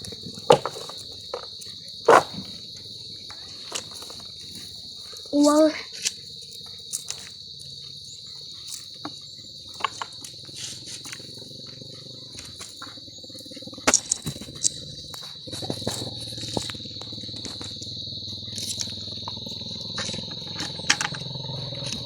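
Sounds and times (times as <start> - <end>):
high-pitched insect chirring: 0.0 - 22.0.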